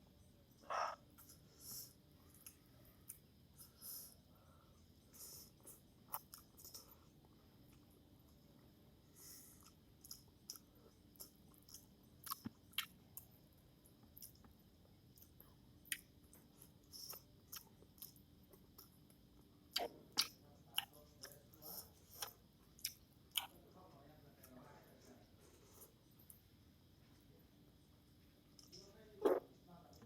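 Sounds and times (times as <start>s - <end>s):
mouth clicks and smacks: 19.7s - 20.9s.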